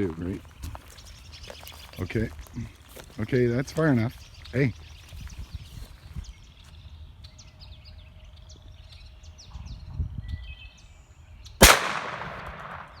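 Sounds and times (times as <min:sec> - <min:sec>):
small birds chirping: 0:00.0 - 0:11.6
low wind rumble: 0:05.2 - 0:13.0
gunshot with echo: 0:11.6 - 0:13.0.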